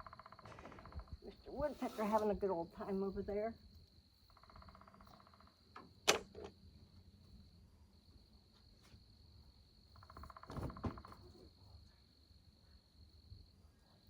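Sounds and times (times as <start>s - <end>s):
insects calling: 0.0s - 6.6s, 9.7s - 11.7s.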